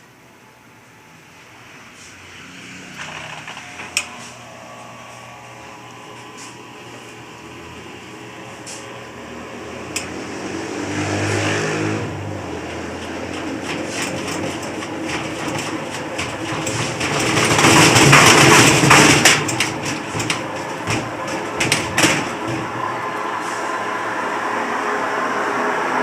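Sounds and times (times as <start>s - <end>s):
washing machine spinning with clatter: 1.2s - 26.0s
irregular knocks: 12.5s - 23.2s.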